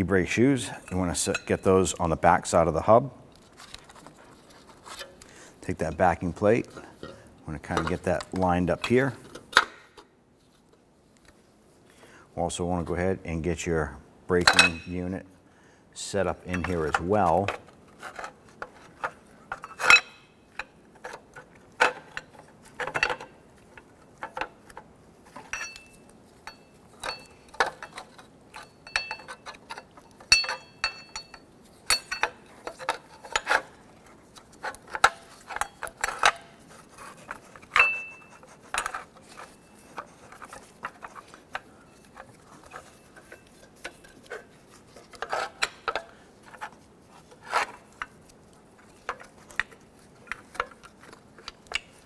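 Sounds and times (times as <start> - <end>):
metal parts clinking: 25.3 - 46.7.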